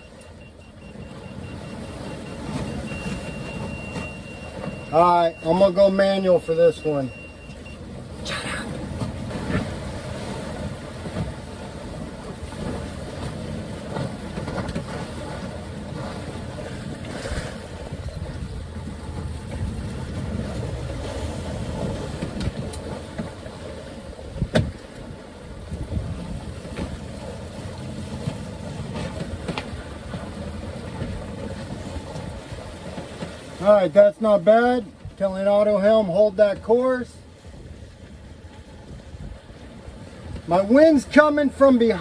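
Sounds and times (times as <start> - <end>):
water noise: 0.0 - 42.0
wind: 0.0 - 42.0.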